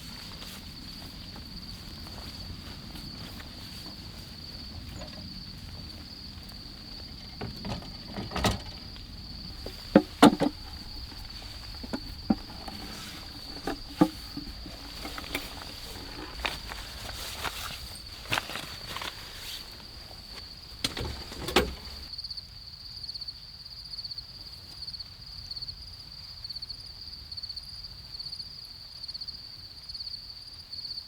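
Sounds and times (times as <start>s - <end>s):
low outdoor hiss: 0.0s - 22.1s
insect trill: 0.0s - 22.2s
objects knocking and clattering: 7.0s - 22.1s.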